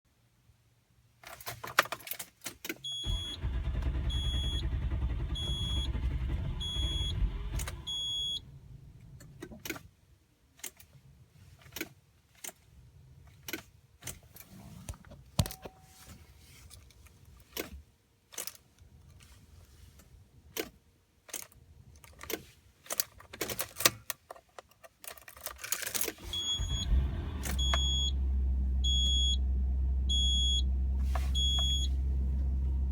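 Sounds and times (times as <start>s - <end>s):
dashboard warning chime beeping: 2.9s - 8.5s, 26.2s - 32.1s
car engine running: 3.1s - 9.2s, 26.2s - 32.9s.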